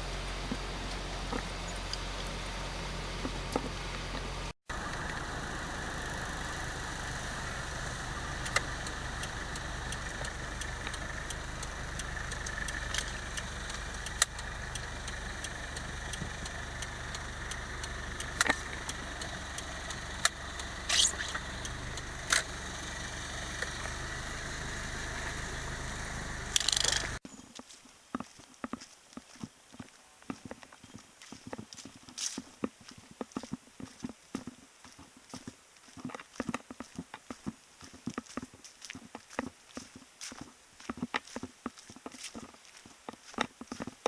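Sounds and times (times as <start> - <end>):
car engine and road noise: 0.0 - 27.4
sharp clicks: 8.4 - 22.5, 26.5 - 27.2.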